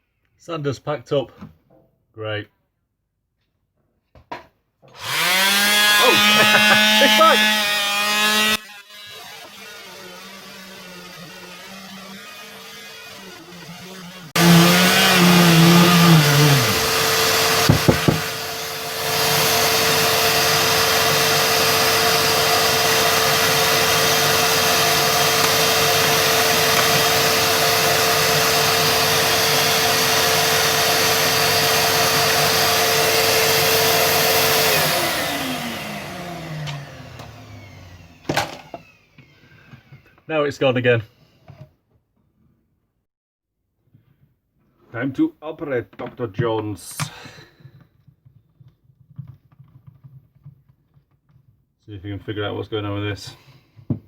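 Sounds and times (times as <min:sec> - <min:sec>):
vacuum cleaner: 0:04.9 - 0:40.3
electric sander running: 0:05.0 - 0:40.0.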